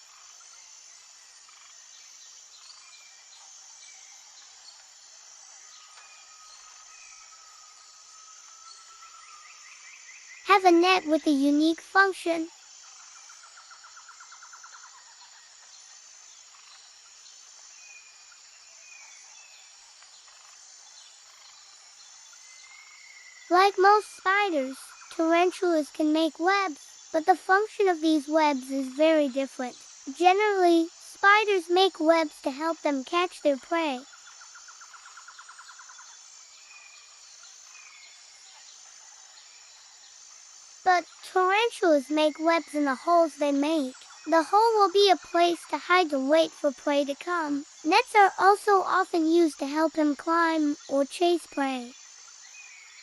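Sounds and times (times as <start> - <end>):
faint bird chirps: 0.0 - 27.5
high-pitched insect trill: 0.0 - 53.0.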